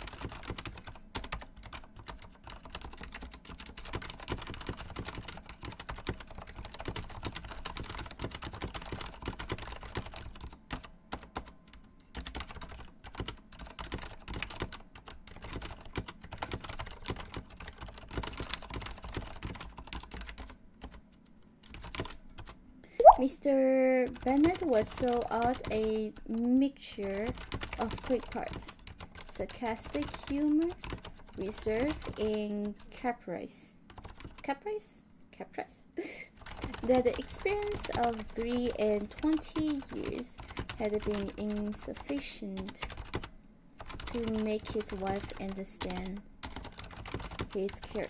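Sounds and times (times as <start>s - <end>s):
mechanical keyboard typing: 0.0s - 21.0s, 21.6s - 22.6s, 24.1s - 26.5s, 27.1s - 32.9s, 33.9s - 34.4s, 36.4s - 48.0s.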